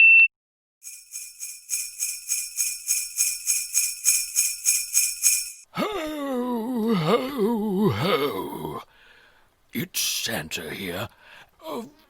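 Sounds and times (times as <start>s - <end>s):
sleigh bells jingling: 0.8s - 5.7s.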